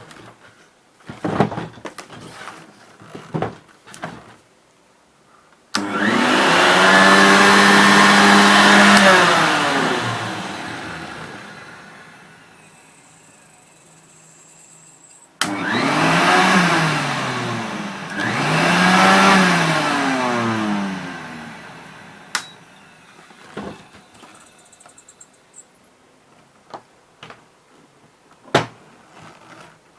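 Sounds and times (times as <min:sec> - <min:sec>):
vacuum cleaner motor whining: 0:05.8 - 0:25.7.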